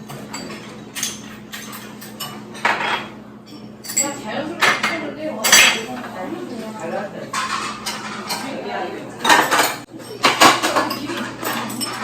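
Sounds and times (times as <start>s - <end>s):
dishes and cutlery clattering: 0.0s - 12.0s.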